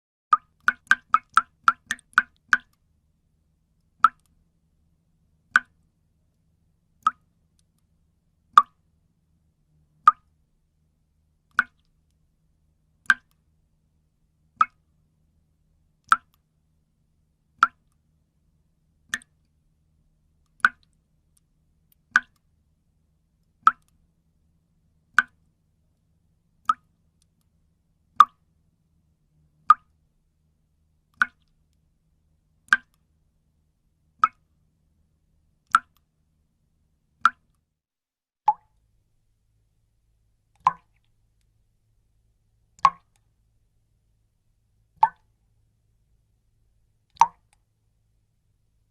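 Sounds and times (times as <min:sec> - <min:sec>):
water drops plopping: 0:38.5 - 0:38.7, 0:40.6 - 0:41.0, 0:42.8 - 0:43.1, 0:45.0 - 0:45.2, 0:47.2 - 0:47.5.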